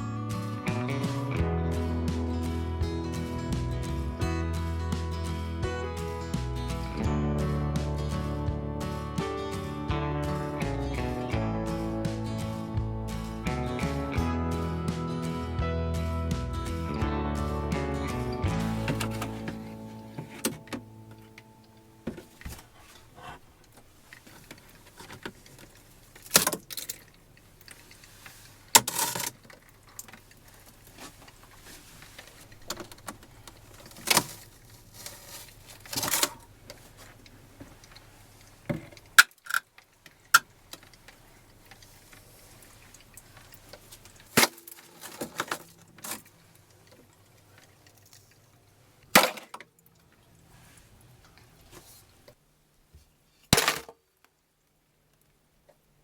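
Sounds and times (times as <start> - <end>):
household items clinking and knocking: 18.5 - 21.4.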